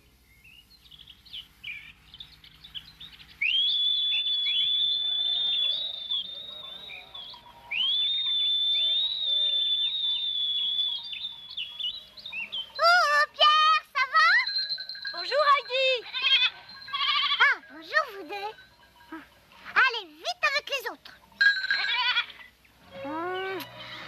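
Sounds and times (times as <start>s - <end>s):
birds chirping: 0.0s - 24.0s
long shrill whistles: 3.4s - 17.4s.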